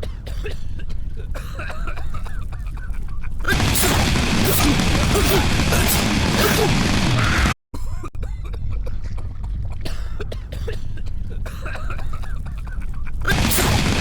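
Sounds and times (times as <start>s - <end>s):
animatronic coughing sounds: 0.0s - 14.0s
steady low rumble: 0.7s - 7.6s.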